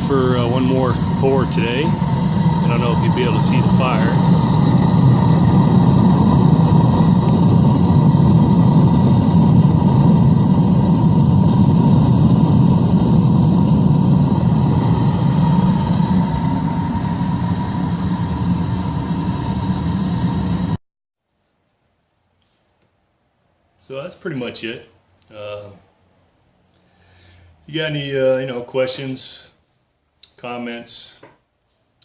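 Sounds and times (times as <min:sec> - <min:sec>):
furnace burner flame rushing: 0:00.0 - 0:20.8.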